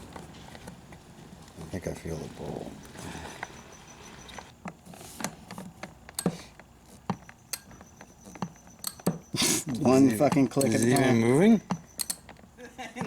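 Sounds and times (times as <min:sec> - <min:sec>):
ratchet wrench clicking: 0:12.0 - 0:12.3.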